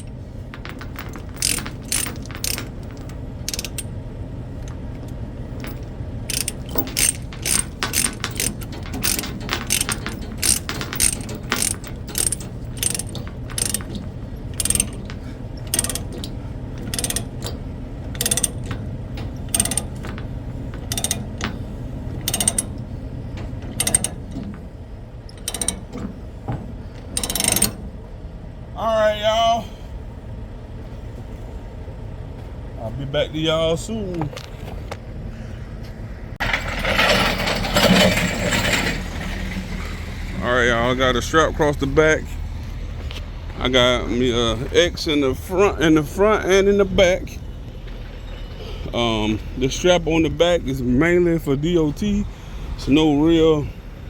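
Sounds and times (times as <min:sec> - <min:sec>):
steady low hum: 0:00.0 - 0:54.0
ratchet strap clicking: 0:00.6 - 0:03.9, 0:05.6 - 0:21.6, 0:22.2 - 0:22.8, 0:23.8 - 0:24.4, 0:25.3 - 0:26.0, 0:27.0 - 0:27.8.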